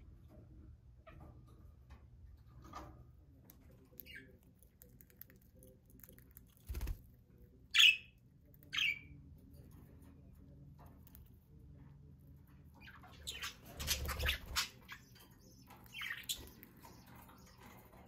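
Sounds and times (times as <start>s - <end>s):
budgerigars chirping: 12.8s - 17.6s.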